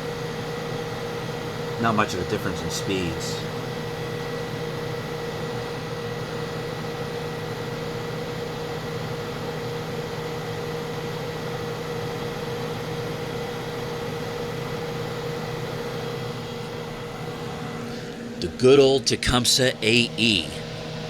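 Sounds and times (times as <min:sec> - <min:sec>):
compressor hum: 0:00.0 - 0:21.0
dehumidifier fan blowing air: 0:00.0 - 0:21.0.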